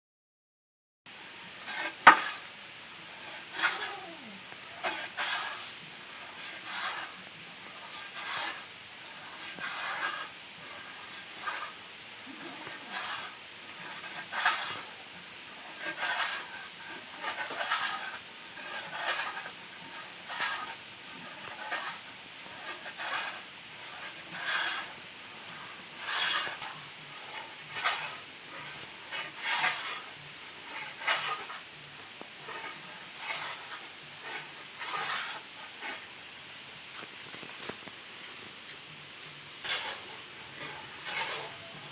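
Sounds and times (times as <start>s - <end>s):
hand plane shaving wood: 1.6s - 2.5s, 3.2s - 4.1s, 4.8s - 7.2s, 7.8s - 11.8s, 12.4s - 14.9s, 15.8s - 31.6s, 32.4s - 36.1s, 39.6s - 41.7s.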